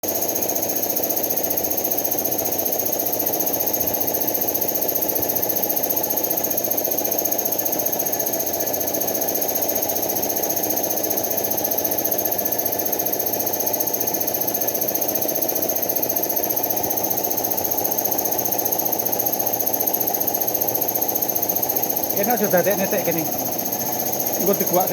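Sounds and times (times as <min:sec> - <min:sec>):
workshop machinery drone: 0:20.6 - 0:24.9
high-pitched whine: 0:22.1 - 0:24.9.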